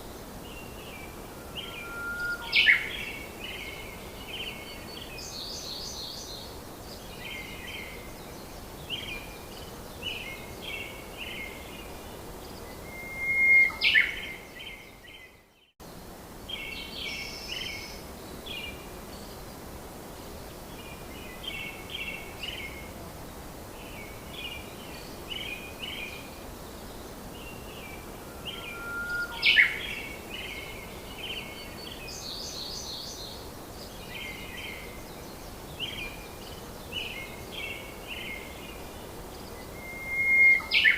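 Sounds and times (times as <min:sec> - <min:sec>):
steady hiss: 0:00.0 - 0:40.9
birds chirping: 0:24.3 - 0:33.3.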